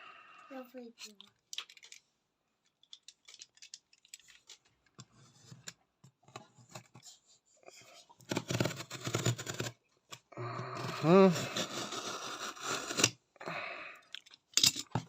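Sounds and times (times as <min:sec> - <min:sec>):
sharp clicks and scraping: 0:08.2 - 0:10.2.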